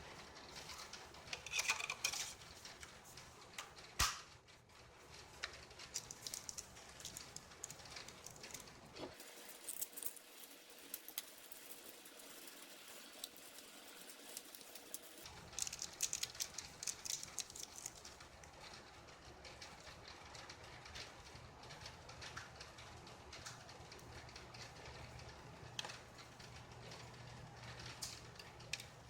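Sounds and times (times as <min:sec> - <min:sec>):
small hardware parts clicking: 0:00.5 - 0:02.9, 0:05.4 - 0:18.8, 0:27.7 - 0:29.0.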